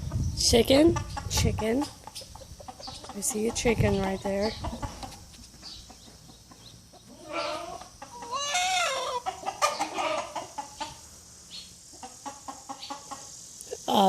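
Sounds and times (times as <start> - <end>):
chicken clucking: 0.0 - 13.4
chicken squawking: 7.0 - 11.0
chicken wavering call: 7.1 - 10.7.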